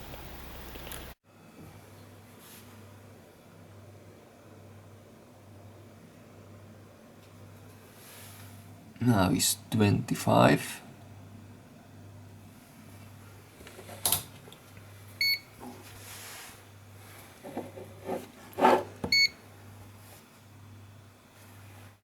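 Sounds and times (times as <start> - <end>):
multimeter beeps: 15.2 - 15.5, 19.1 - 19.4.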